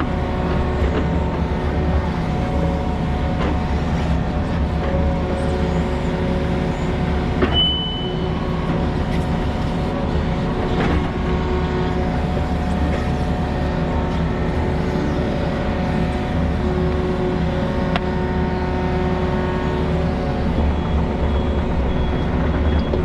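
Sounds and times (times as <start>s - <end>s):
heavy equipment engine running: 0.0s - 23.0s
brief high squeal: 7.5s - 8.3s.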